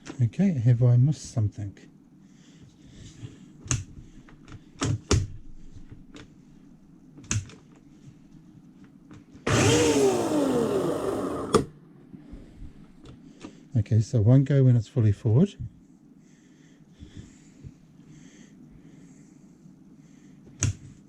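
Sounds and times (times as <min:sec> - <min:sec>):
chainsaw motor whining: 0:09.5 - 0:11.7.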